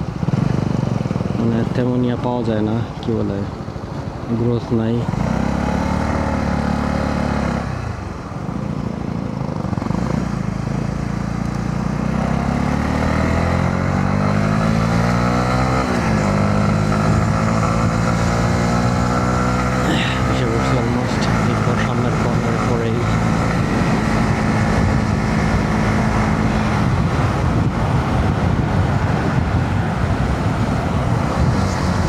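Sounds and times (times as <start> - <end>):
motorcycle engine accelerating: 0.0 - 3.9, 4.9 - 32.0
wind rushing: 23.0 - 32.0.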